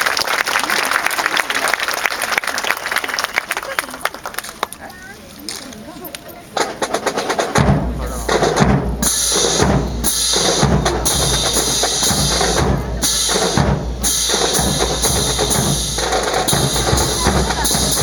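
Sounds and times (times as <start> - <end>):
snare drums: 6.6 - 18.0
bass drums: 7.6 - 18.0.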